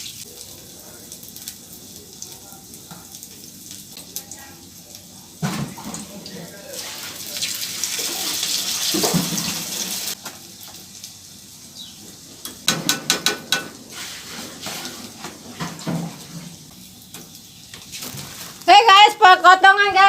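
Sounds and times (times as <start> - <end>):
water running from a tap: 0.0 - 14.0.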